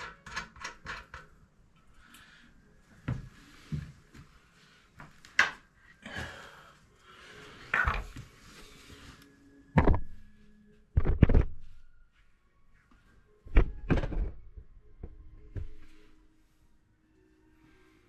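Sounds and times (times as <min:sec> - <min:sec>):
tools thudding and knocking: 0:13.5 - 0:15.9.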